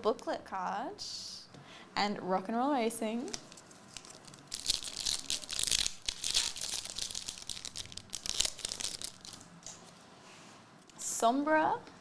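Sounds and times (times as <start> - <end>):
cards and packaging crinkling: 3.2 - 9.5.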